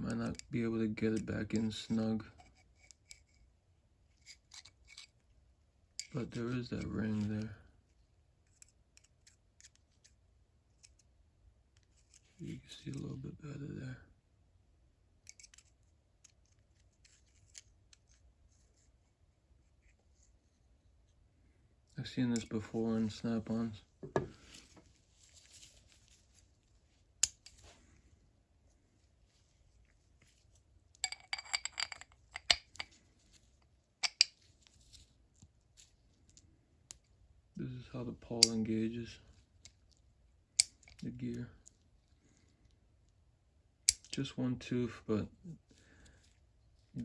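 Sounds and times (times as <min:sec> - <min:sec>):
small steel parts clinking: 0:30.9 - 0:33.0, 0:34.0 - 0:34.4
steel parts clicking and tapping: 0:34.0 - 0:34.4.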